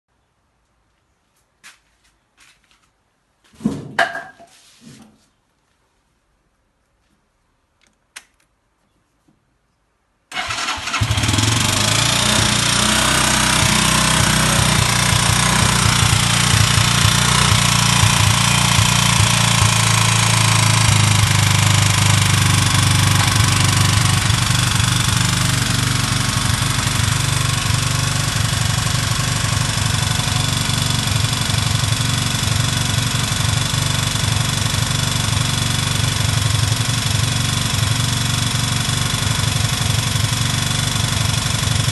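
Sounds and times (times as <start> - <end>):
engine knock: 10.4 - 41.9
motorcycle engine running: 10.4 - 41.9.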